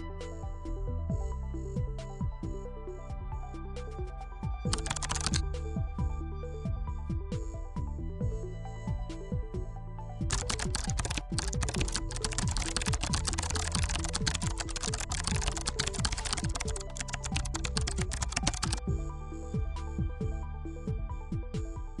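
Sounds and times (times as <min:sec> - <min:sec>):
background music: 0:00.0 - 0:22.0
rapid keyboard typing: 0:04.7 - 0:05.6, 0:10.3 - 0:18.8.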